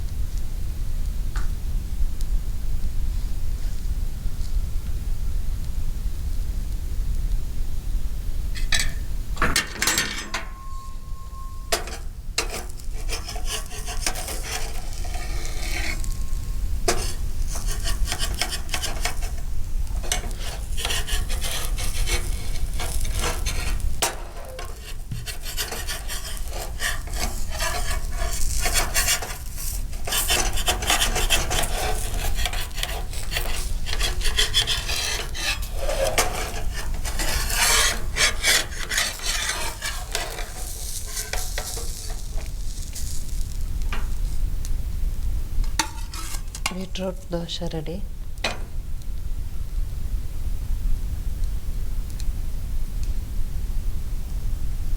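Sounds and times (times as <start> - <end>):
spatula scraping pan: 8.6 - 44.4, 45.5 - 47.8.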